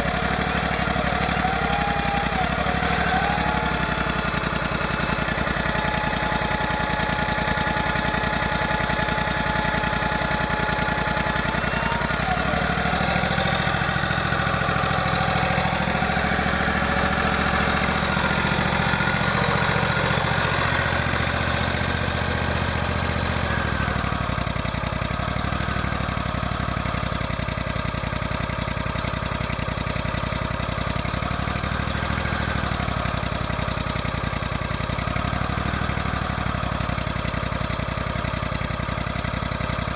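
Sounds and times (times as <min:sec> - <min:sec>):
engine running: 0:00.0 - 0:39.9.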